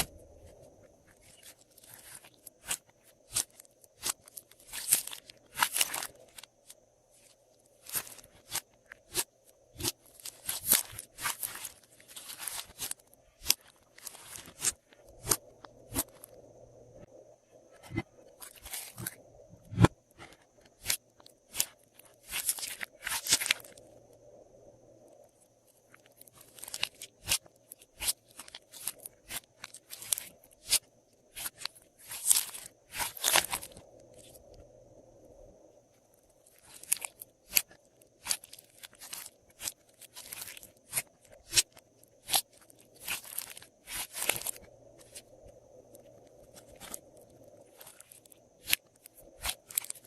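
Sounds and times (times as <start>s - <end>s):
hands squishing slime: 1.1s - 6.5s, 7.2s - 16.2s, 20.7s - 23.8s, 26.4s - 34.3s, 36.5s - 45.2s, 49.4s - 50.0s.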